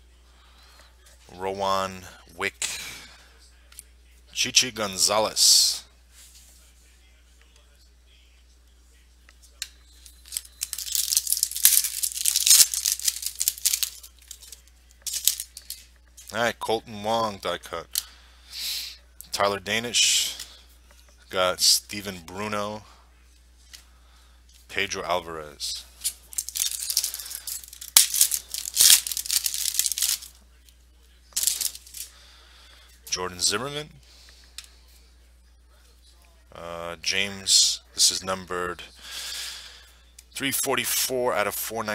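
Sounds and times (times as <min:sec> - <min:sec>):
foil wrapper tearing and crinkling: 0:10.3 - 0:14.2, 0:26.3 - 0:30.3, 0:31.4 - 0:32.0.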